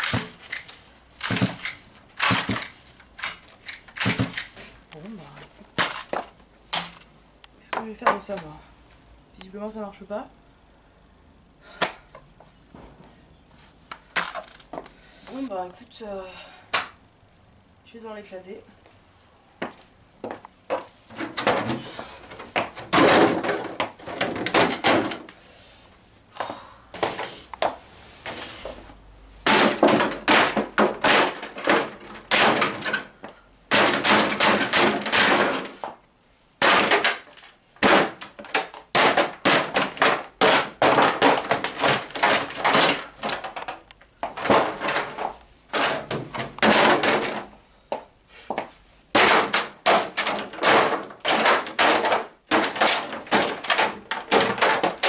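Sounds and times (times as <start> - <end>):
plastic cracking: 0.0 - 4.7, 5.7 - 7.1, 36.6 - 47.5, 49.1 - 55.0.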